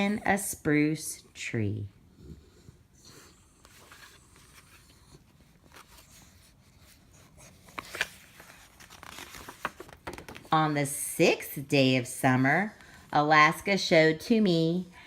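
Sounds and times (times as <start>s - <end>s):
book pages rustling: 3.6s - 10.6s.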